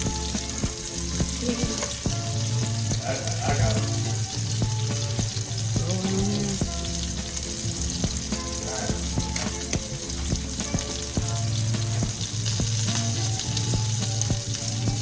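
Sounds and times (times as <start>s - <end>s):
background music: 0.0s - 15.0s
food sizzling in a pan: 0.0s - 15.0s.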